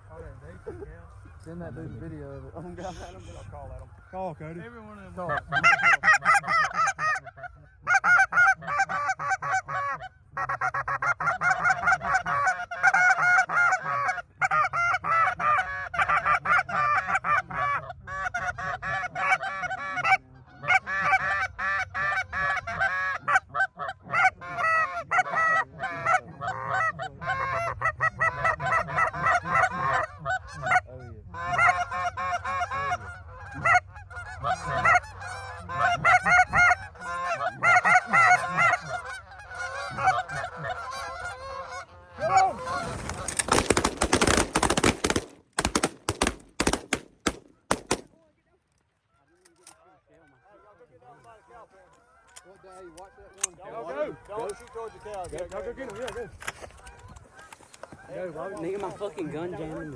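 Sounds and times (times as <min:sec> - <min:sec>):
goose calls honking: 0:05.2 - 0:48.1, 0:51.9 - 0:59.9.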